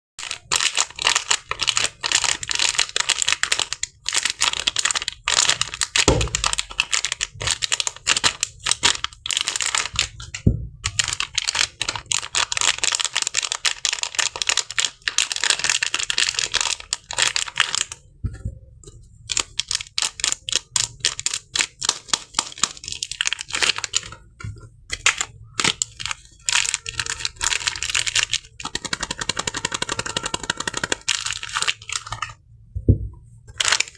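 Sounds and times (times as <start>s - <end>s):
paper crinkling and tearing: 0.2s - 10.2s, 25.0s - 32.4s, 33.5s - 33.9s
soft thumps: 32.7s - 33.3s.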